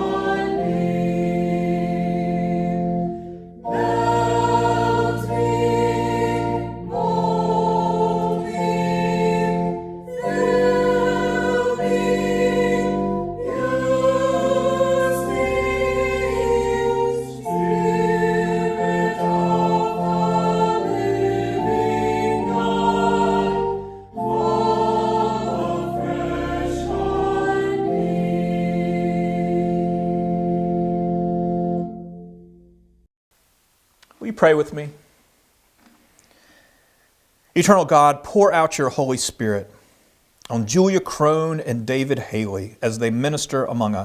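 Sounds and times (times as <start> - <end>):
choir singing a hymn: 0.0 - 32.2.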